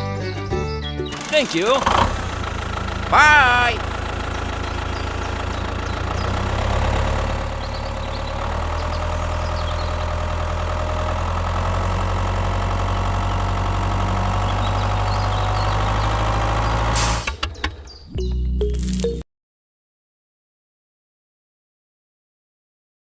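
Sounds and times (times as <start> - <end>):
small engine idling: 1.0 - 18.0.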